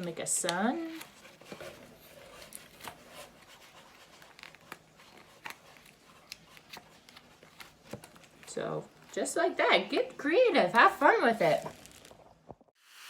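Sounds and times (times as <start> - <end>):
craft materials tapping and rustling: 0.0 - 9.2.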